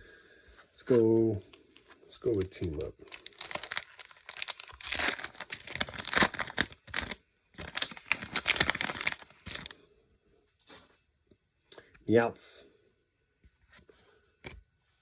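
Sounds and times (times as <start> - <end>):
foil wrapper crinkling: 0.9 - 9.7.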